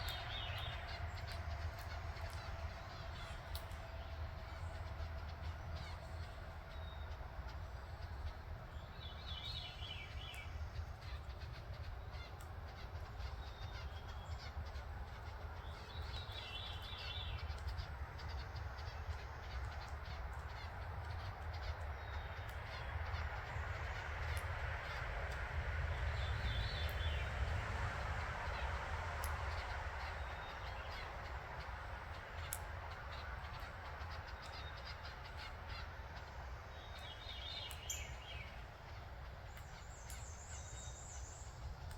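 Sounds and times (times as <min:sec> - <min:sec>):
songbird singing: 0:00.0 - 0:41.9
steady low rumble: 0:00.0 - 0:41.9.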